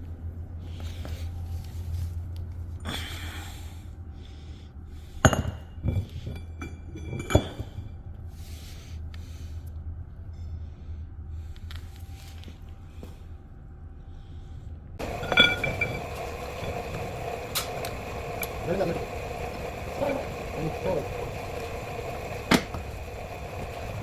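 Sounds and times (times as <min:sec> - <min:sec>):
steady low hum: 0:00.0 - 0:24.0
metal clinking with ringing: 0:05.2 - 0:08.0, 0:15.0 - 0:20.4.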